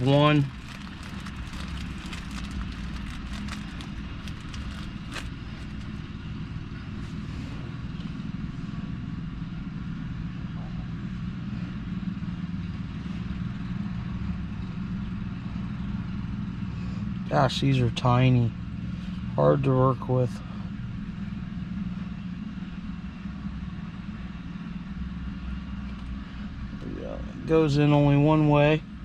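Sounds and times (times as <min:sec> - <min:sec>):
low mechanical hum: 0:00.0 - 0:29.0.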